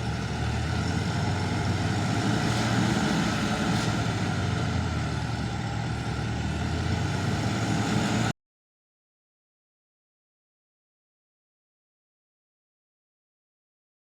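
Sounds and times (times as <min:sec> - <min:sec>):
diesel engine droning: 0:00.0 - 0:08.3.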